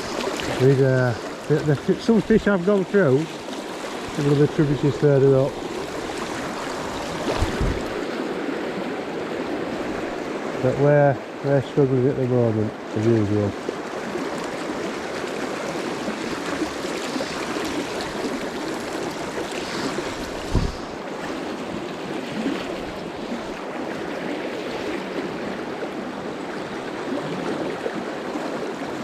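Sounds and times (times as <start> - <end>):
river water rushing: 0.0 - 29.0
low thump: 7.3 - 8.0, 20.5 - 20.9.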